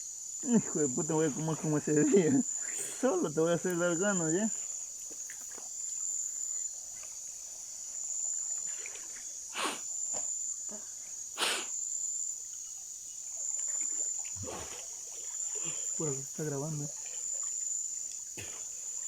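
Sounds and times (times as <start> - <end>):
crickets chirping: 0.0 - 19.0
short scuffs or splashes: 14.3 - 14.9.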